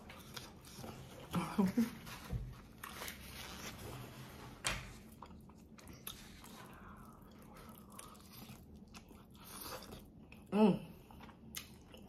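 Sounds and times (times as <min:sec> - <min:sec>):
person chewing: 0:00.0 - 0:01.3, 0:04.9 - 0:12.0.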